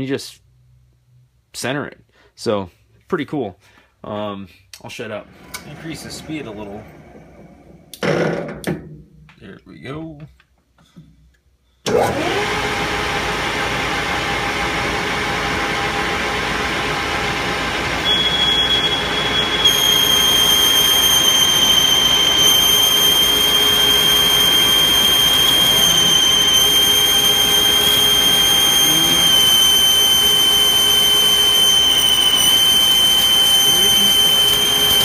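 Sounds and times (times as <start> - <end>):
metal lathe running: 11.9 - 35.0
high-pitched cutting squeal: 18.0 - 35.0.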